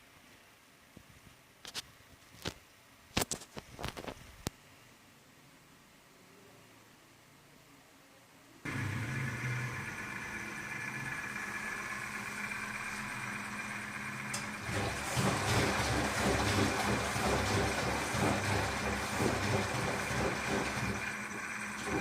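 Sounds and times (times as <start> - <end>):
washing machine humming: 8.7 - 22.0
drum rumbling and sloshing: 14.4 - 22.0.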